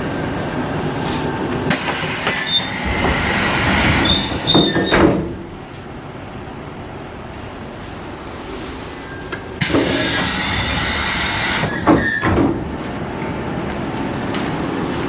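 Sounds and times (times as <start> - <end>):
low steady train hum: 0.0 - 15.0
loud air hiss: 1.7 - 4.5, 9.6 - 11.9
doors thudding: 2.3 - 5.5, 9.7 - 12.7.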